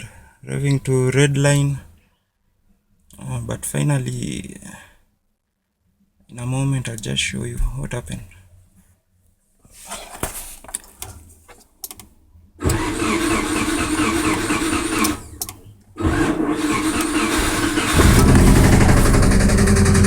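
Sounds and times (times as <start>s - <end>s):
engine cranking on starter: 12.6s - 20.0s
engine running and knocking: 16.0s - 20.0s.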